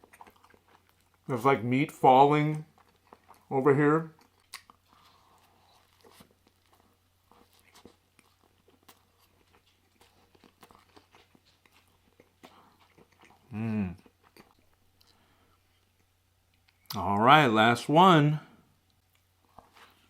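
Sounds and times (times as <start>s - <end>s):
wet chewing and mouth clicks: 0.0s - 1.3s, 2.4s - 17.0s
person humming: 13.5s - 14.0s.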